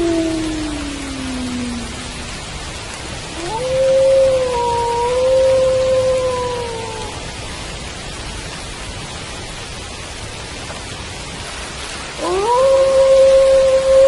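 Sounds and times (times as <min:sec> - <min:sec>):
wolf howling: 0:00.0 - 0:02.2, 0:03.3 - 0:07.2, 0:12.2 - 0:14.0
steady rain: 0:00.0 - 0:14.0.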